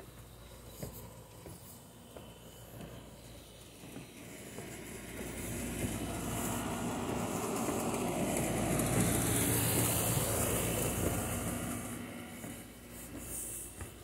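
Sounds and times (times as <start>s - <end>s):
passing vehicle rumble: 4.9s - 12.8s.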